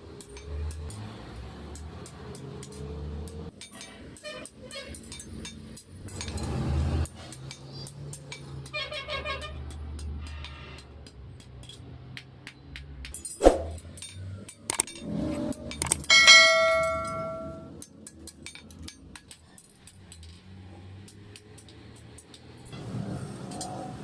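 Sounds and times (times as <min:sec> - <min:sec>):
hammer striking steel: 0:15.8 - 0:17.7
metal ringing: 0:15.9 - 0:17.7.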